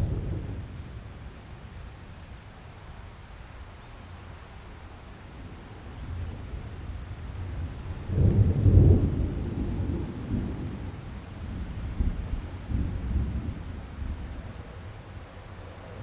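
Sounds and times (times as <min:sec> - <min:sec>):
thunder rumbling: 0:07.5 - 0:14.4.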